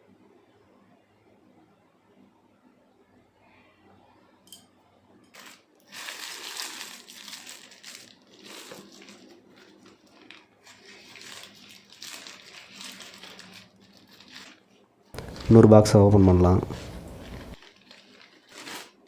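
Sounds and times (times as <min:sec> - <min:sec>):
packaging crinkling and rustling: 0:05.4 - 0:14.6, 0:15.2 - 0:19.0.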